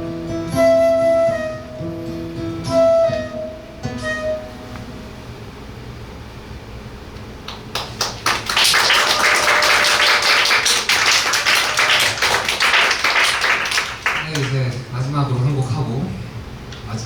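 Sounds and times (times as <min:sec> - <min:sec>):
audience applause: 0:07.5 - 0:14.8.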